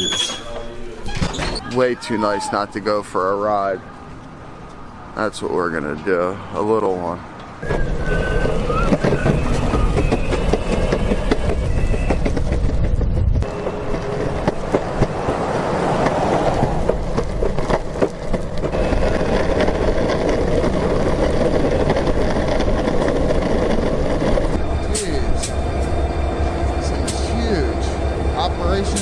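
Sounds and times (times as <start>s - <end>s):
skateboard wheels rumbling on pavement: 7.6s - 24.6s
skateboard clicks: 8.9s - 24.4s.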